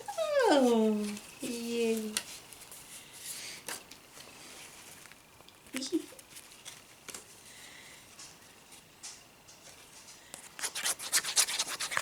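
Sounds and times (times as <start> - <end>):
paper and plastic rubbing: 10.5 - 12.0
scratchy rustles: 10.5 - 12.0.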